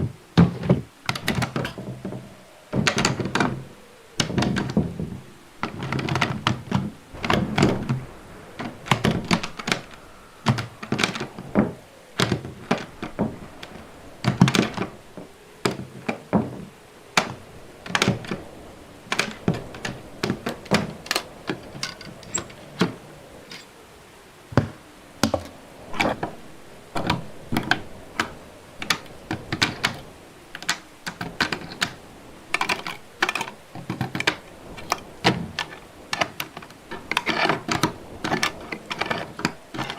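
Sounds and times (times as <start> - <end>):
door hardware clicks and thunks: 0.4 - 18.4.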